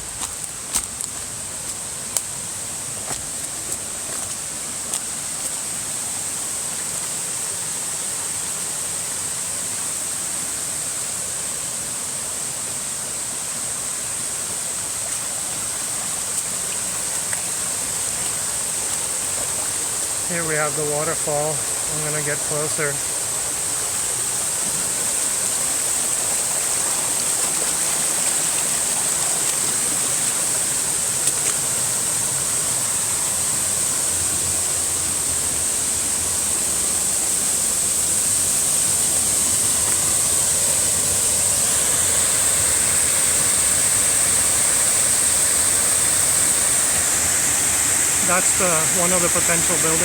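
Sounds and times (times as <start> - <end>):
waterfall rushing: 12.5 - 50.0.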